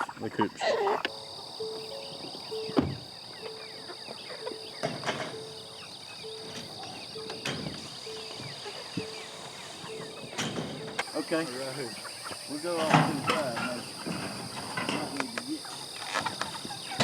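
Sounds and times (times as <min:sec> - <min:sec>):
low pulsing insect note: 0:00.4 - 0:17.0
high-pitched insect buzz: 0:00.9 - 0:17.0
sharp knocks: 0:01.6 - 0:03.7.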